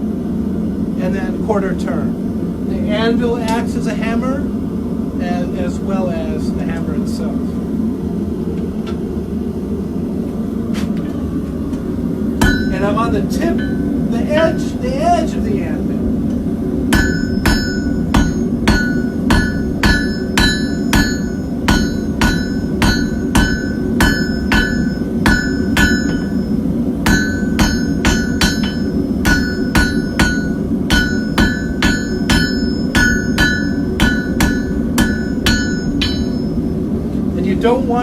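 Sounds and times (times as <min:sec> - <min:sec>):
steady low rush: 0:00.0 - 0:38.0
hammer striking steel on anvil: 0:12.4 - 0:14.7, 0:16.9 - 0:36.7.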